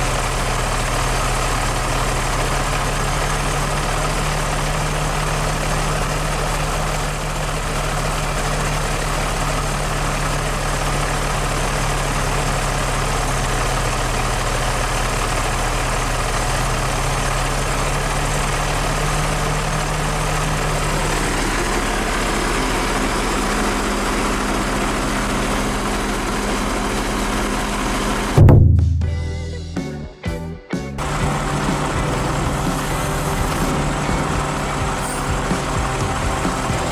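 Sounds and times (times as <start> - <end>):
diesel engine idling: 0.0 - 36.9.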